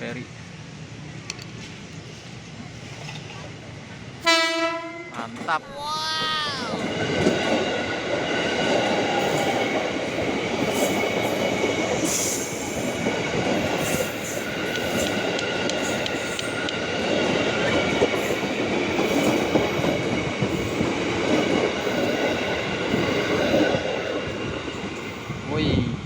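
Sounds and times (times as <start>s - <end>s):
train wheels rumbling on rail: 6.6s - 26.0s.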